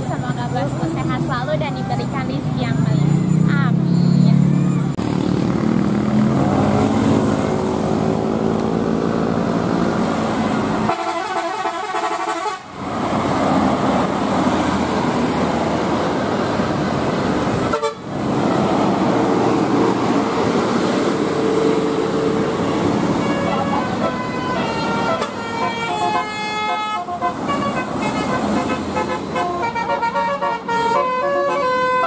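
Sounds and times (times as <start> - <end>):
bus engines: 0.0 - 32.0
road noise: 0.0 - 32.0
multi-tone musical air horns: 10.9 - 12.7, 17.7 - 18.1, 23.2 - 32.0.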